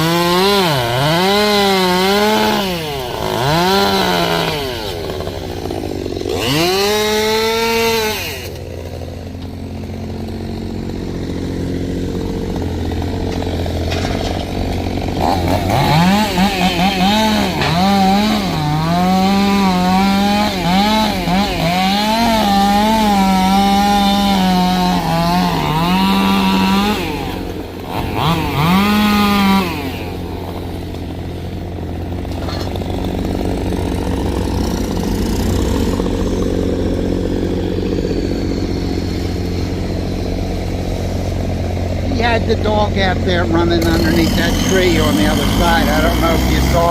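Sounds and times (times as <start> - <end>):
chainsaw revving and cutting wood: 0.0 - 46.9.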